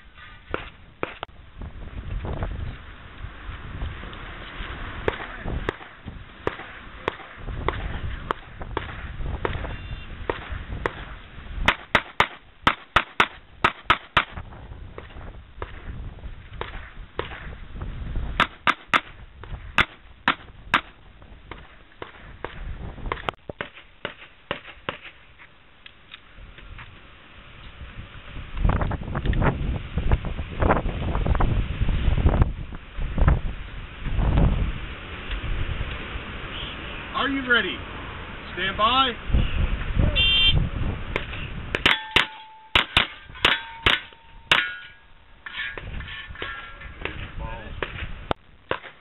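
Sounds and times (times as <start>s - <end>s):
wind rumbling on microphone: 0.0s - 23.7s, 26.2s - 37.2s, 37.8s - 49.0s
gunshots: 5.0s - 14.4s, 18.4s - 19.2s, 41.2s - 44.9s.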